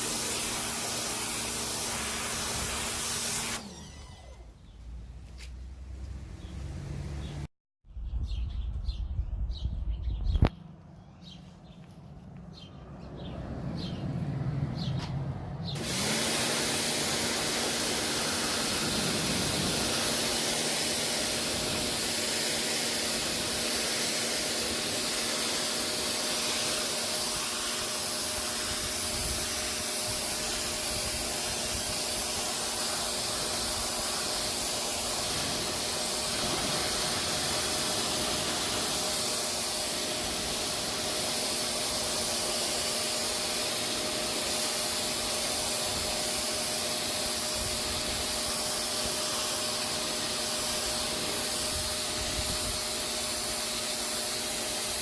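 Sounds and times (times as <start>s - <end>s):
pressure washer water jet spraying: 0.0s - 4.4s, 15.7s - 55.0s
electric pump motor humming: 0.0s - 4.6s, 15.8s - 55.0s.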